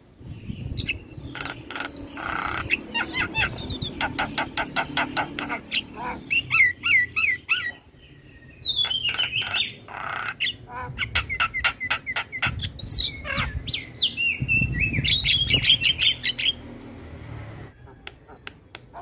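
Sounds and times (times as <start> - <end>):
mynas calling: 0.6 - 8.0, 8.6 - 14.2.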